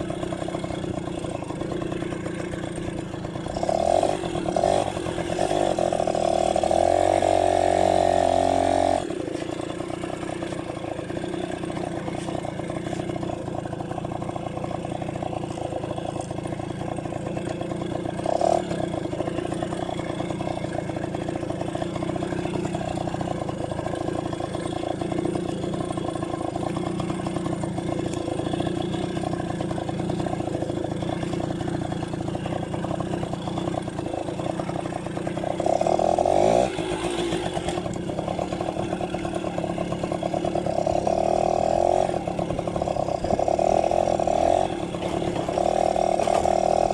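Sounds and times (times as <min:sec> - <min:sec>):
two-stroke engine running: 0:00.0 - 0:46.9.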